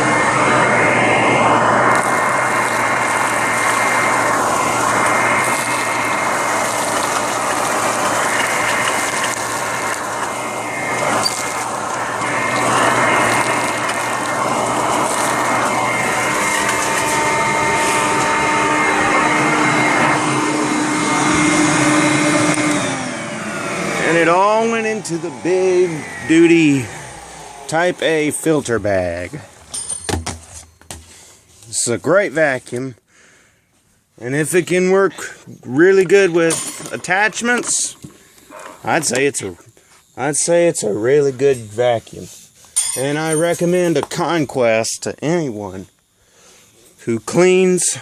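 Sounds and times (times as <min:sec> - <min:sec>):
rushing suction air: 0:00.0 - 0:29.7
vacuum cleaner motor whine: 0:00.0 - 0:29.7.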